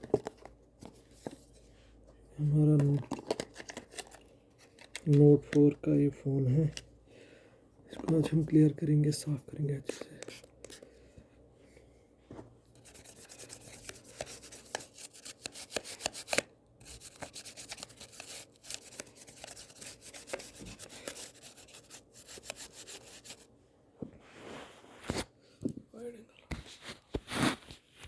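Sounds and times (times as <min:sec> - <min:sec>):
scratchy rubbing on a phone: 0:12.8 - 0:23.5.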